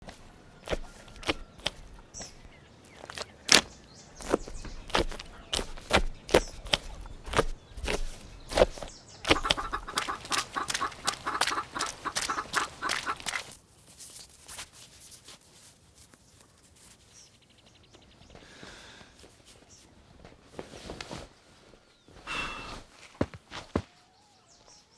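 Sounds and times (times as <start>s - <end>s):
chickens clucking: 4.9s - 13.5s
sharp ticks or steps: 9.3s - 13.5s.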